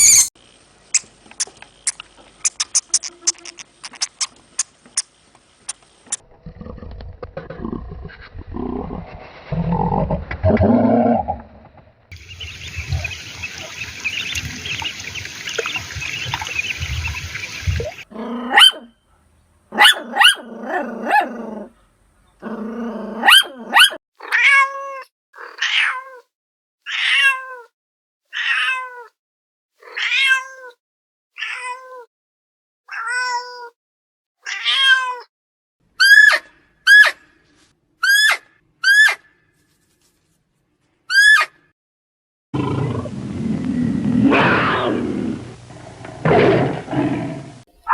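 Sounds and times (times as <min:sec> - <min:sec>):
cat meowing: 0:24.2 - 0:26.3, 0:26.9 - 0:27.7, 0:28.3 - 0:29.1, 0:29.8 - 0:30.8, 0:31.4 - 0:32.1, 0:32.9 - 0:33.8, 0:34.4 - 0:35.3.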